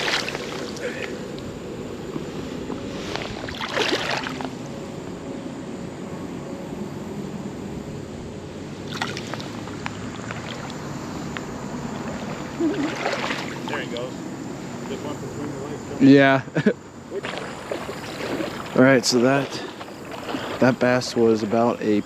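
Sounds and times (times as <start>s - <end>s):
fish splashing in water: 0.0s - 1.1s, 3.1s - 4.6s, 8.8s - 10.9s, 12.0s - 13.8s, 17.1s - 20.8s
creek water flowing: 0.0s - 22.0s
road traffic rumble: 0.0s - 22.0s.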